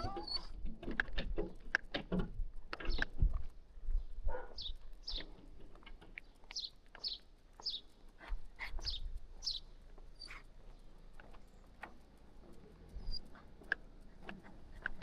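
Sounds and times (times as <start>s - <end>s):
small bird chirping: 0.0s - 0.6s, 2.8s - 3.2s, 4.0s - 15.0s.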